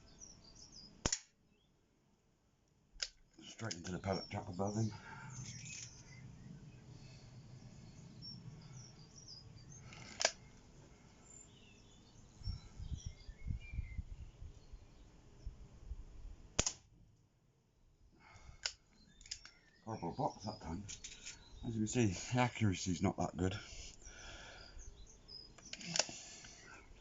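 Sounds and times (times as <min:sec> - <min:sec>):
faint bird chirps: 0:00.0 - 0:01.8, 0:03.4 - 0:15.5, 0:18.2 - 0:27.0
air pistol click: 0:01.0 - 0:01.3, 0:10.0 - 0:10.4, 0:16.6 - 0:16.8
air pistol shot: 0:01.0 - 0:01.3, 0:16.6 - 0:16.9.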